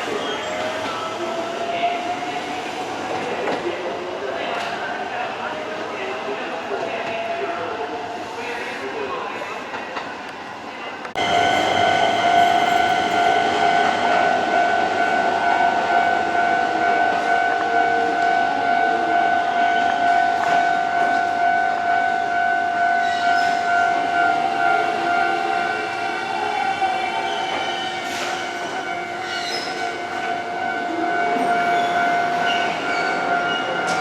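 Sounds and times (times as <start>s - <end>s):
electric train high-pitched whine: 11.2s - 34.0s.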